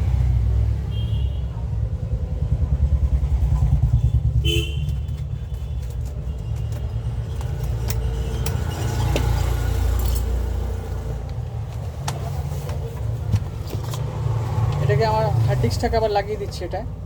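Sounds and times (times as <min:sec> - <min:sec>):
road traffic rumble: 0:00.0 - 0:17.0
vehicle horn toot: 0:00.9 - 0:01.6, 0:04.0 - 0:05.7.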